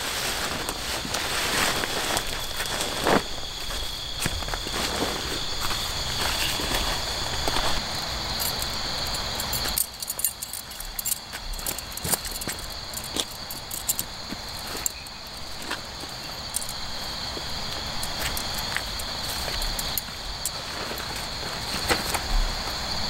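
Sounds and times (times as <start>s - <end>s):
rustling: 0.0s - 17.2s
night insects chirring: 0.0s - 23.0s.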